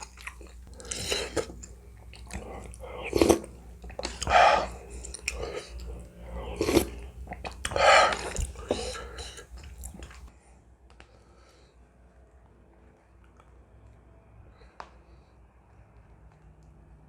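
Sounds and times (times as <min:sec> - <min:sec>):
person chewing and slurping noodles: 0:00.0 - 0:10.3.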